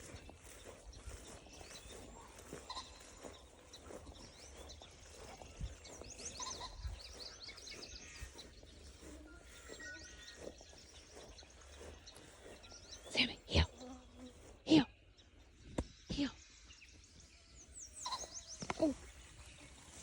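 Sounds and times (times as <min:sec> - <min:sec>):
small birds chirping: 0:00.0 - 0:20.0
wind rumble on microphone: 0:04.2 - 0:09.8.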